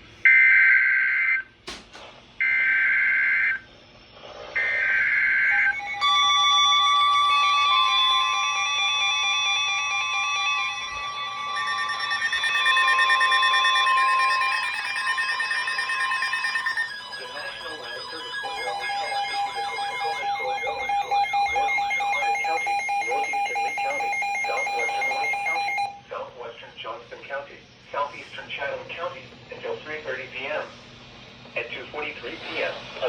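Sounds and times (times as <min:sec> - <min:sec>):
digital data header bursts: 0:05.5 - 0:25.8
multi-pitched attention tone: 0:05.5 - 0:26.0.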